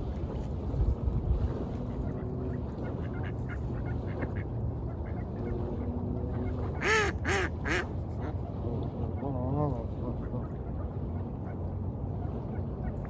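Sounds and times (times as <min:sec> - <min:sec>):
waves rumbling: 0:00.0 - 0:13.0
wind: 0:00.0 - 0:13.0
duck quacking: 0:06.3 - 0:07.9.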